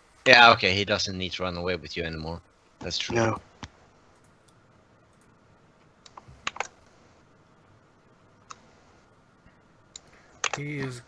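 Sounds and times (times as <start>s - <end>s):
computer keyboard clicks: 6.1s - 6.7s, 10.0s - 10.6s.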